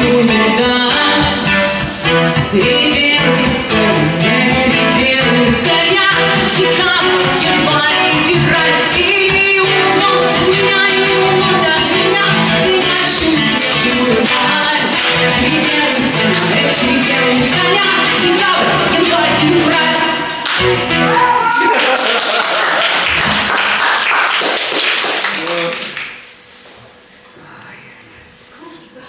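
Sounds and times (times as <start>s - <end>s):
person singing: 0.0s - 20.5s
guitar accompaniment: 0.0s - 26.5s.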